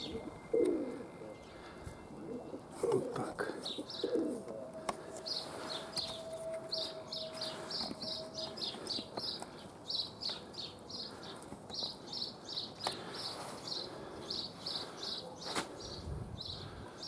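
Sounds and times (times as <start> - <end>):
faint steady tone: 0.0 - 9.8
songbird chirping: 0.0 - 17.0.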